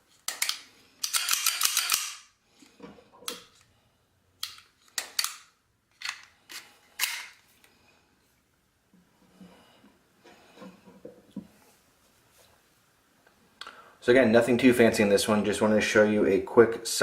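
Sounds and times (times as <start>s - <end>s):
pistol metal clicks and snaps: 0.2s - 2.3s, 4.4s - 7.3s.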